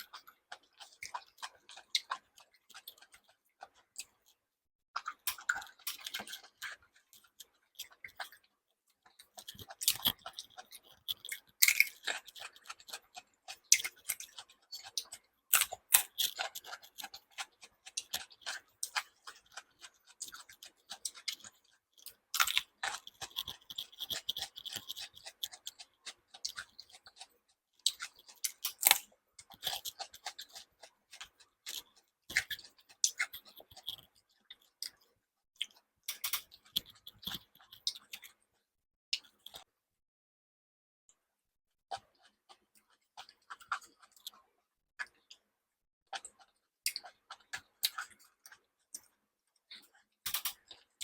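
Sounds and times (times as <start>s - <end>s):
person chewing: 0.0s - 4.4s, 5.0s - 38.6s, 39.2s - 39.7s, 41.9s - 45.5s, 46.1s - 51.0s.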